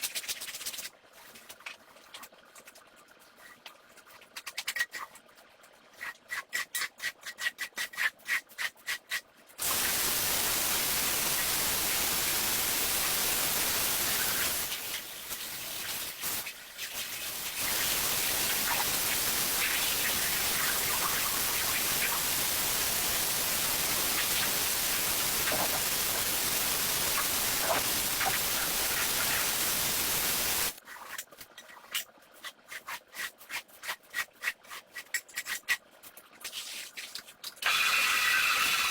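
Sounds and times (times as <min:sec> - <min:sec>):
cleaning equipment rushing hiss: 0:09.6 - 0:30.8.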